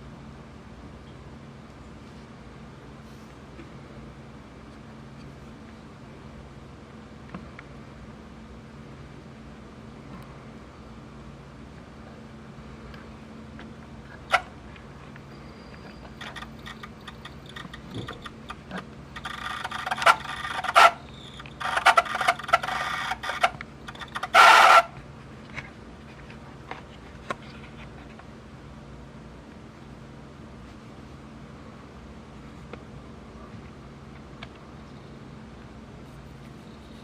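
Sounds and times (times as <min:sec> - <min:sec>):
steady low hum: 0:00.0 - 0:37.0
tape deck mechanism clattering: 0:16.1 - 0:24.9.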